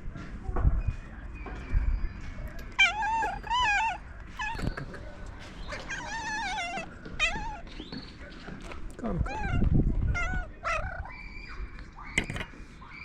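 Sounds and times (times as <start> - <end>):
cat trilling cries: 2.7 - 5.0, 5.7 - 7.7, 9.2 - 11.6.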